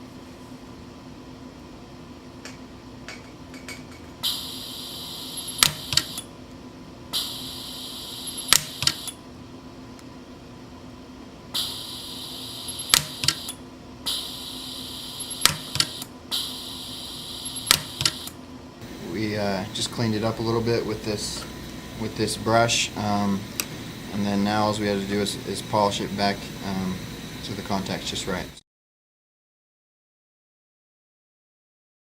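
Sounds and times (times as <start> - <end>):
low steady hum: 0.0 - 28.6
high steady whine: 2.4 - 28.6
welder pulse snaps: 5.4 - 6.3, 8.3 - 9.2, 11.6 - 14.4, 15.2 - 18.4.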